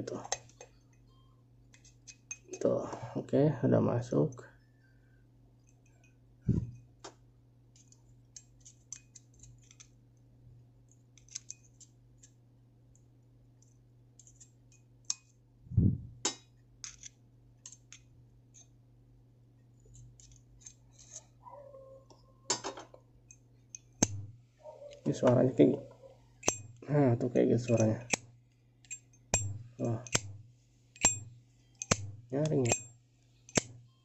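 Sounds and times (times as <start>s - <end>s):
lighter metallic clicks and taps: 26.4s - 26.7s, 28.8s - 30.4s, 31.0s - 32.9s, 33.5s - 33.8s.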